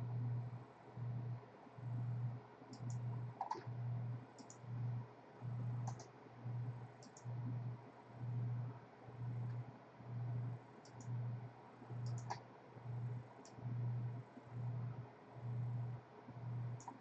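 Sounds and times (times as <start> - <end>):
pulsing low hum: 0.0 - 17.0
computer mouse clicking: 2.7 - 3.7, 4.4 - 4.6, 5.8 - 6.1, 7.0 - 7.3, 10.8 - 11.2, 12.0 - 12.4, 16.8 - 17.0.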